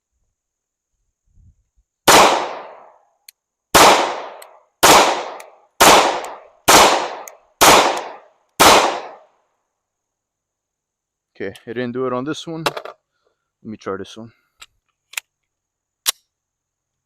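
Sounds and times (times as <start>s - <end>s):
pistol shots echoing: 2.1s - 2.9s, 3.7s - 9.2s.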